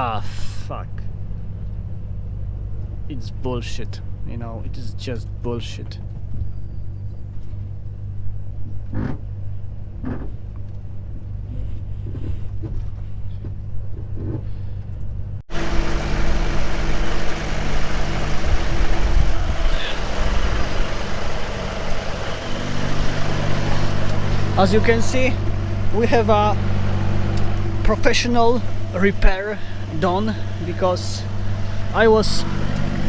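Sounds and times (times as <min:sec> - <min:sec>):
loud noisy steady running: 0:15.5 - 0:33.0
truck diesel engine idling: 0:15.5 - 0:33.0.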